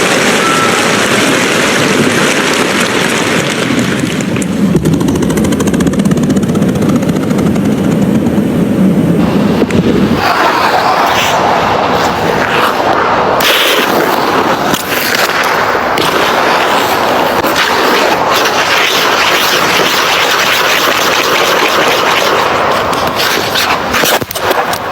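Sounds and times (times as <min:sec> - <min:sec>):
skate blades gliding on ice: 0:00.0 - 0:07.6, 0:09.2 - 0:24.9
skate blades scraping ice: 0:09.3 - 0:24.9.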